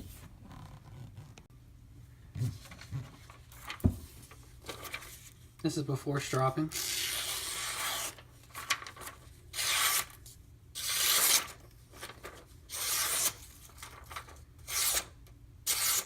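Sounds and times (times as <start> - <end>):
knife slicing paper: 6.8 - 10.2, 10.8 - 15.1, 15.7 - 16.0.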